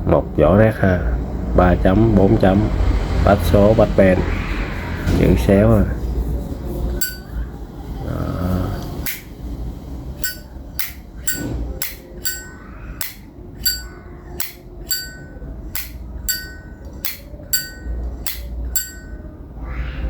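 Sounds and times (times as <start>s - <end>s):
lighter lid clinking open and shut: 9.0s - 9.3s.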